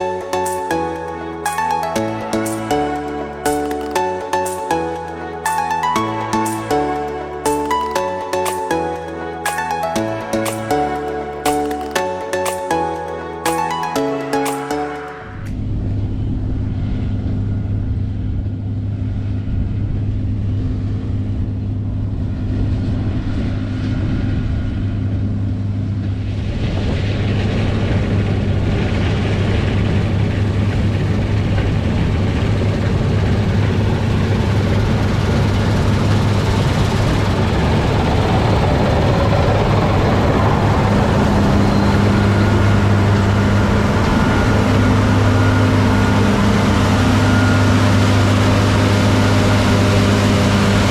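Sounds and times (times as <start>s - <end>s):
diesel engine humming: 33.7s - 50.9s.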